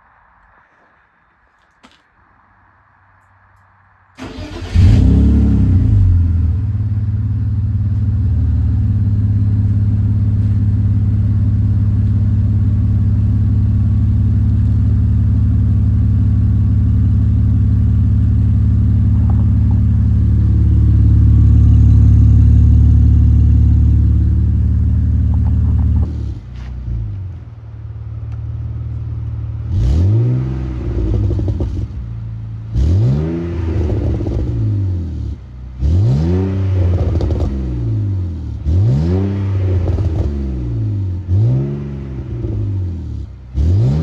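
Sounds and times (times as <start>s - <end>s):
car engine starting and idling: 4.0s - 36.2s.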